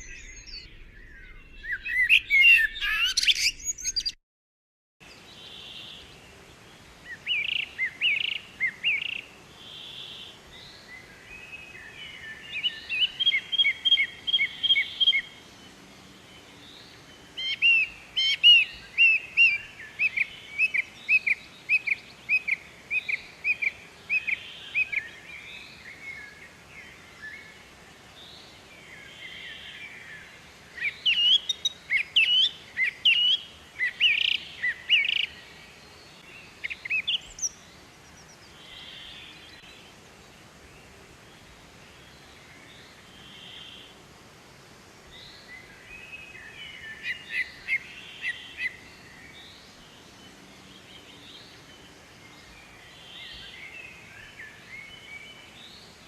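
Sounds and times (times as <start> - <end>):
songbirds chirping: 0.0 - 4.2, 5.0 - 56.0.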